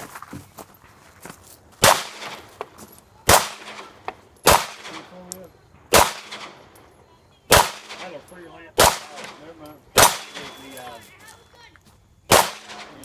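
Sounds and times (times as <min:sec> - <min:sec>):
gunshot echo: 0:01.8 - 0:02.6, 0:03.3 - 0:05.2, 0:05.9 - 0:06.7, 0:07.5 - 0:10.8, 0:12.3 - 0:13.0
loud pistol shots: 0:01.8 - 0:02.6, 0:03.2 - 0:05.2, 0:05.9 - 0:06.8, 0:07.5 - 0:10.9, 0:12.3 - 0:13.0.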